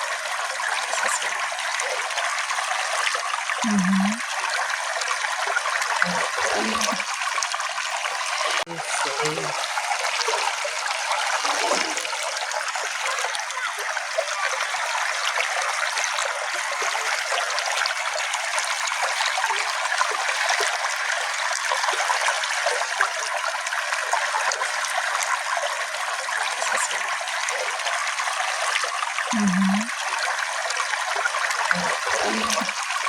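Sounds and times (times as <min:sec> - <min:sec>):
small stream trickling: 0:00.0 - 0:33.0.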